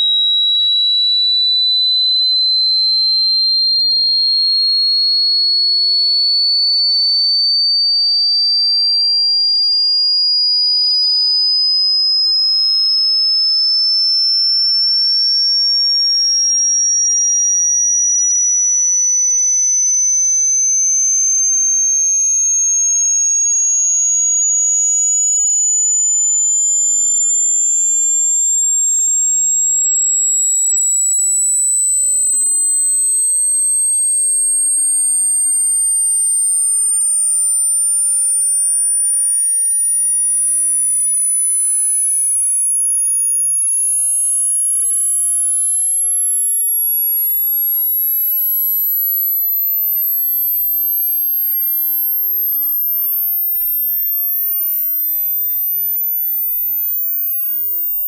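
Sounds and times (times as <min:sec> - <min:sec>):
rising high-pitched sine tone: 0:00.0 - 0:58.0.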